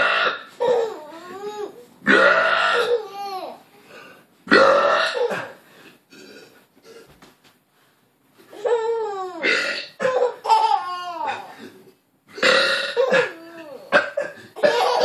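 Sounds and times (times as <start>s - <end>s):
baby laughing: 0.6s - 1.8s, 2.8s - 3.6s, 8.5s - 11.6s, 14.6s - 15.0s
man burping loudly: 2.1s - 2.9s, 4.5s - 5.6s, 9.4s - 10.0s, 12.4s - 13.3s.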